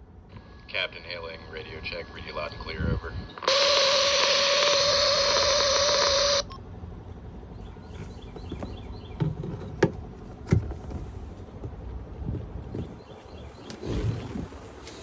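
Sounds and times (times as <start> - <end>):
radio static hiss with tone: 0.3 - 6.6
radio click: 3.4 - 6.5.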